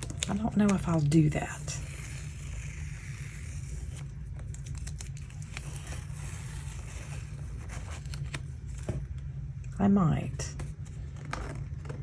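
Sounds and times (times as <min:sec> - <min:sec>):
paper crackling: 0:00.0 - 0:09.2
tape peeling off paper: 0:01.8 - 0:08.5.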